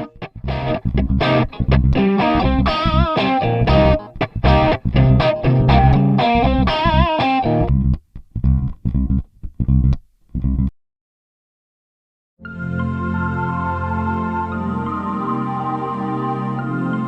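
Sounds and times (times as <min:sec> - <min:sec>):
electric guitar and bass riff: 0:00.0 - 0:10.7
sustained ambient synth chord: 0:12.4 - 0:17.0.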